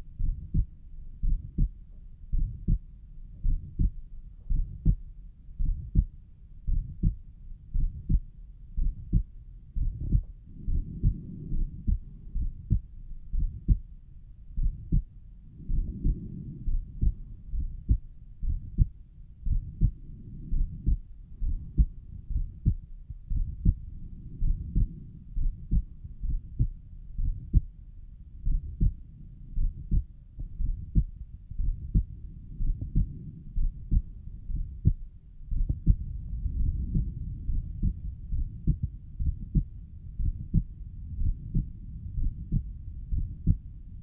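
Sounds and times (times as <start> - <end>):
soft whooshing heart murmur: 0.0 - 44.0
heartbeat thuds: 0.2 - 5.0, 5.6 - 13.9, 14.5 - 27.7, 28.4 - 29.0, 29.6 - 43.8.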